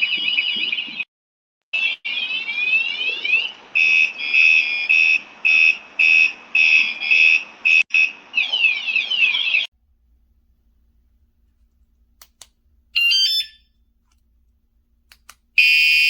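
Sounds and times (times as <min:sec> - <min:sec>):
bike alarm siren: 0:01.8 - 0:09.7, 0:13.0 - 0:13.7, 0:15.6 - 0:16.0.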